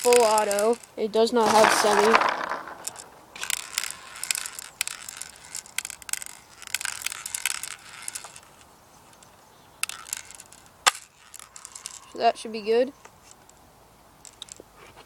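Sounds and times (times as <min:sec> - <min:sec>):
plastic pellets rattling into magazine: 0:00.0 - 0:12.2
sharp clicks: 0:09.1 - 0:12.1.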